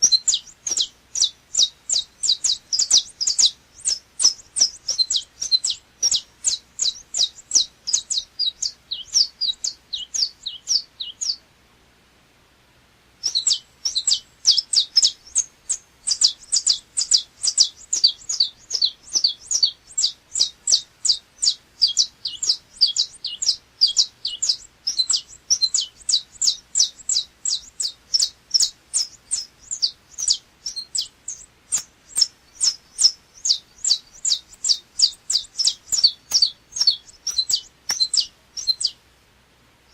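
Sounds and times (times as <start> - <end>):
finch chirping: 0.0 - 11.4, 13.2 - 39.0.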